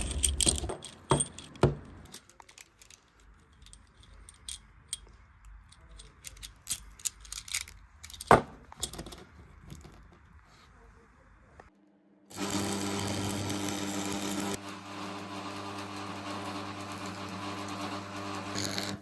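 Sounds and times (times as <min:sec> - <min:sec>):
metal pieces clinking: 0:00.0 - 0:05.1, 0:05.7 - 0:10.0.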